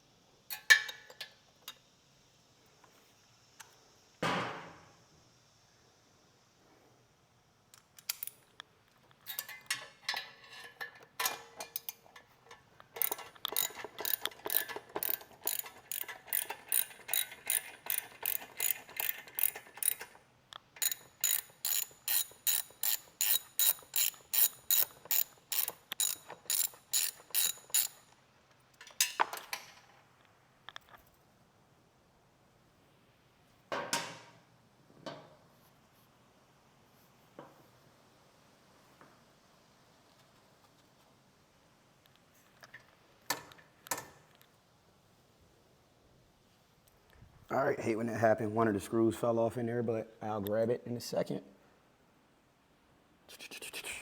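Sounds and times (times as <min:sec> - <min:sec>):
ratchet wrench clicking: 0:11.7 - 0:28.1.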